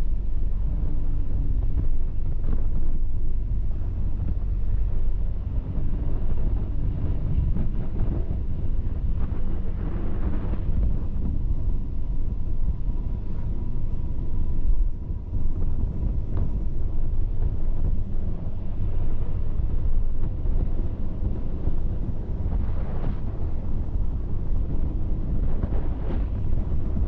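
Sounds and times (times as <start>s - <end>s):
vehicle rumble and road noise: 0.0s - 27.0s
wind buffeting microphone: 0.0s - 27.0s.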